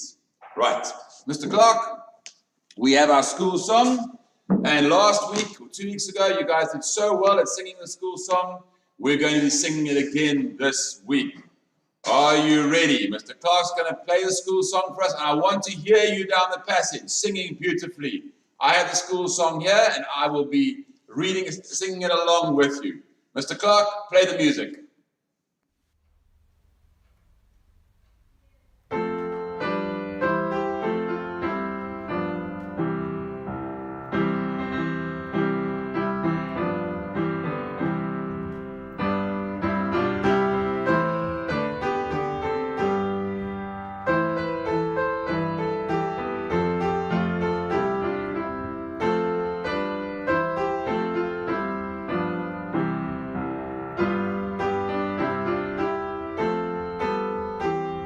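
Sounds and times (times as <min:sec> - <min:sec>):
piano music: 0:28.9 - 0:58.0.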